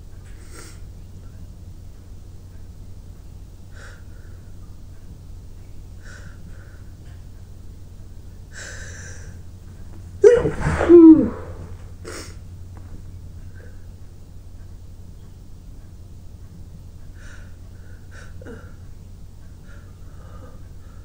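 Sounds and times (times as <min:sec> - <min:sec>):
person sneezing loudly: 0:10.2 - 0:11.8.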